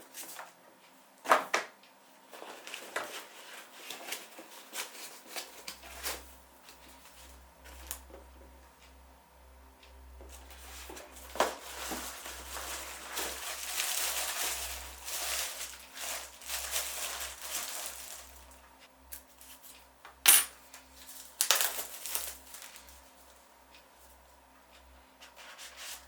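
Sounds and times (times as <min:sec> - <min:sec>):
packaging rustling and crinkling: 0:02.3 - 0:07.1, 0:10.3 - 0:18.6, 0:21.0 - 0:23.0.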